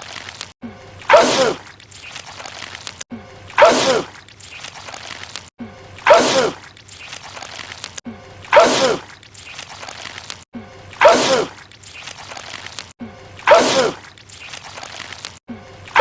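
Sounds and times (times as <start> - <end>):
man sneezing loudly: 8.5 - 9.0, 11.0 - 11.6, 13.5 - 14.0.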